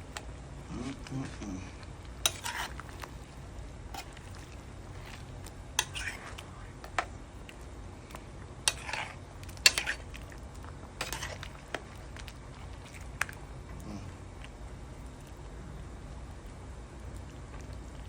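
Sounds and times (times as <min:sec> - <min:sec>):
steady low hum: 0:00.0 - 0:18.0
utensil clinking on a pot: 0:05.8 - 0:06.2.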